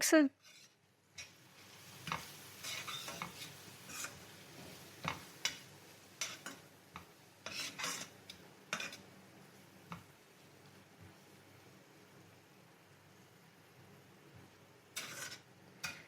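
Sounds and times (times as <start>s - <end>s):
utensil scraping a pan: 0.4s - 1.4s, 2.0s - 5.6s, 6.2s - 6.6s, 7.4s - 9.1s, 15.0s - 16.0s.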